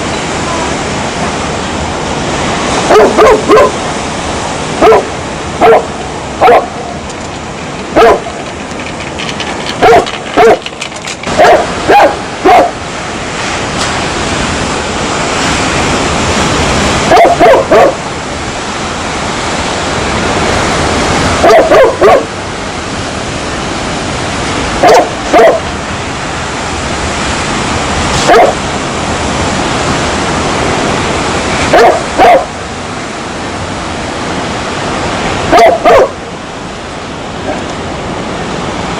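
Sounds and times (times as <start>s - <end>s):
dog barking: 2.8s - 3.8s, 4.8s - 6.8s, 7.9s - 8.4s, 9.8s - 10.7s, 11.3s - 12.8s, 17.1s - 18.0s, 21.4s - 22.3s, 24.8s - 25.7s, 28.2s - 28.6s, 31.7s - 32.5s, 35.5s - 36.2s.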